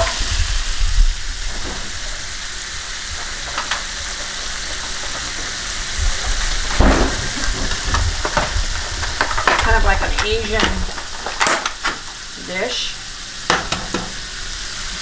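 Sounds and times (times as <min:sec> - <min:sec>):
noodles sizzling in a pan: 0:00.0 - 0:15.0
pan knocks: 0:01.5 - 0:12.2.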